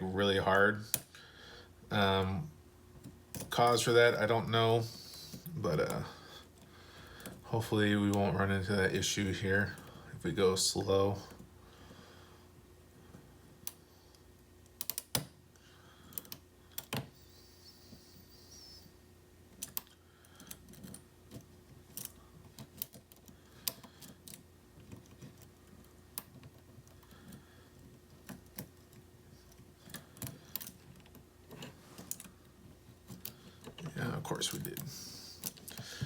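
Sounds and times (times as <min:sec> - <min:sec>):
faint steady hum: 0:00.0 - 0:36.0
lock pick clicks and taps: 0:14.7 - 0:15.3.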